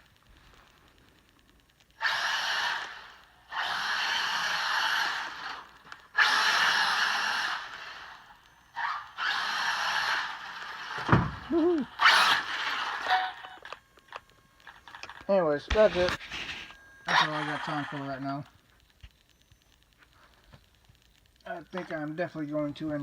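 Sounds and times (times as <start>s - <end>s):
electric motor whine: 2.0s - 19.4s.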